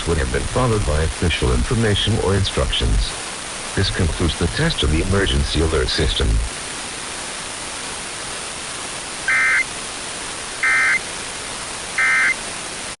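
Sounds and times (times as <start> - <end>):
radio hiss: 0.0 - 13.0
buzzy digital data bursts: 9.3 - 9.7, 10.6 - 11.0.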